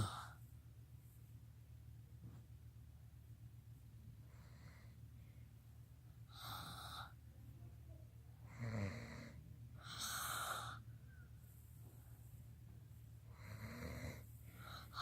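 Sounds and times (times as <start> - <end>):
rasping snores: 8.5 - 10.8, 13.3 - 14.2.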